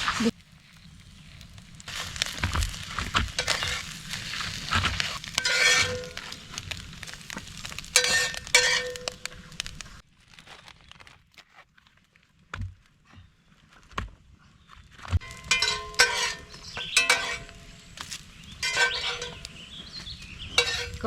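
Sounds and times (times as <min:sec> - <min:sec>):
utensils and dishes clinking: 0:15.2 - 0:17.8, 0:18.6 - 0:19.6, 0:20.5 - 0:21.0.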